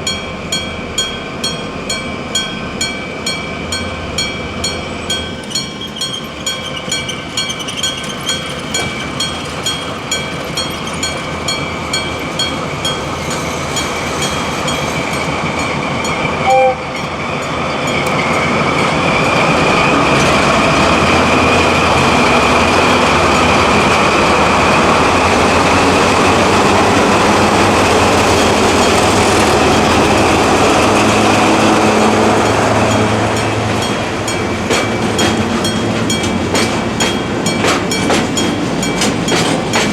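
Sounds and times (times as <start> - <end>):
locomotive engine noise: 0.0 - 39.9
train wheels rolling: 0.1 - 39.9
train horn blast: 16.4 - 17.1.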